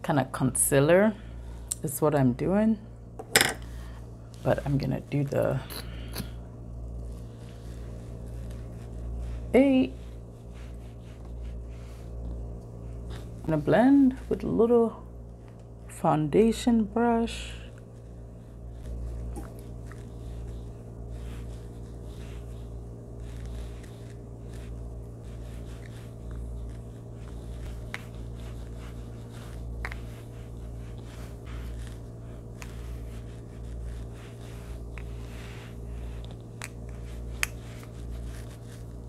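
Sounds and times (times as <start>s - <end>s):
low hum: 0.0s - 39.0s
brush strokes on skin: 6.8s - 14.6s, 17.5s - 39.0s.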